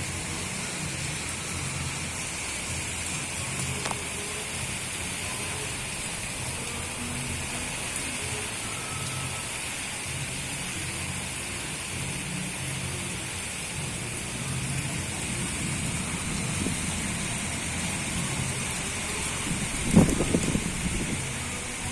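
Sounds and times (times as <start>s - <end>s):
strong wind buffeting microphone: 15.5s - 21.9s.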